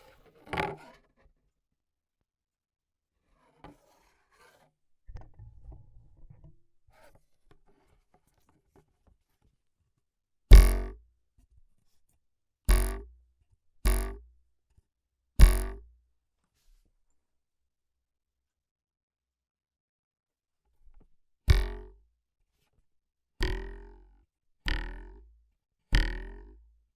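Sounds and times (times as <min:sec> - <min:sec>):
faint scrapes: 0:03.2 - 0:04.7
plucked wire twanging: 0:10.5 - 0:11.0, 0:12.7 - 0:13.1, 0:13.9 - 0:14.2, 0:15.4 - 0:15.8, 0:21.5 - 0:21.9
short low rattle: 0:10.5 - 0:11.0.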